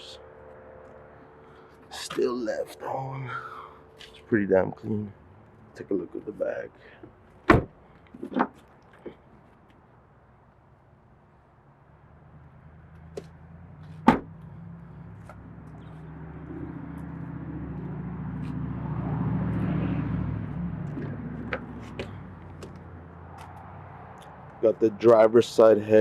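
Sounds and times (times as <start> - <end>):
motor vehicle passing by: 11.8 - 26.0.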